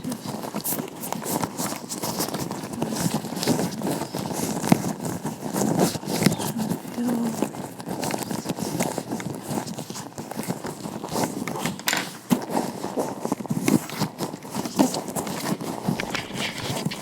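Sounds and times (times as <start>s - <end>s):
crinkly glove rustles: 0.0s - 17.0s
gloved hands rubbing and tapping: 0.0s - 17.0s.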